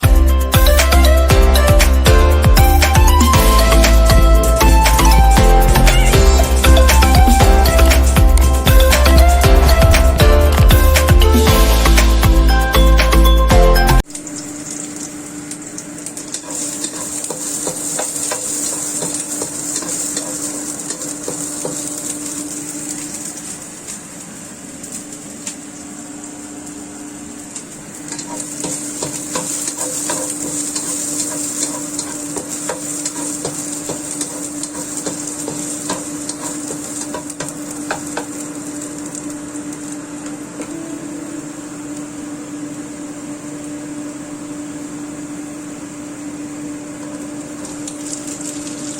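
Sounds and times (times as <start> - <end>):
food sizzling in a pan: 0.0 - 12.9, 14.0 - 48.9
steady low hum: 2.1 - 47.6
utensil scraping a pan: 16.3 - 23.2, 28.1 - 38.0.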